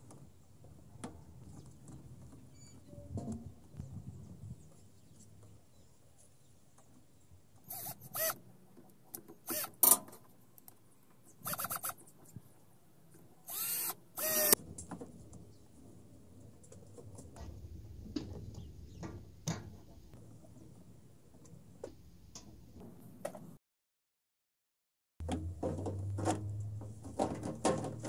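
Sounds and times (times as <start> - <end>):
small power tool bursts: 7.7 - 8.4, 9.4 - 9.8, 11.4 - 12.0, 13.5 - 14.6.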